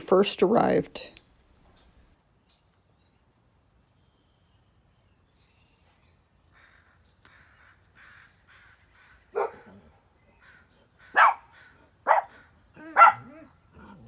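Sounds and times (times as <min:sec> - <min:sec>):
dogs barking: 0:09.3 - 0:10.0, 0:11.0 - 0:14.0.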